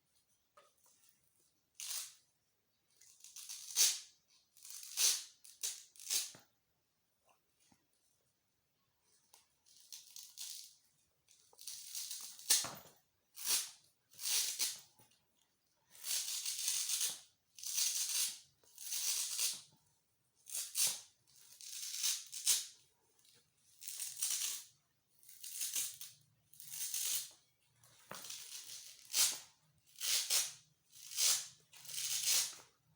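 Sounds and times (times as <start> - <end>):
velcro ripping: 28.2 - 32.6.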